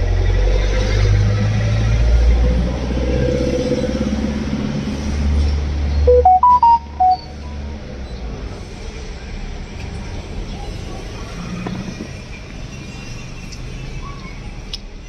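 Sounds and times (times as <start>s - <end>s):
electronic start-up beeps: 6.1s - 7.3s.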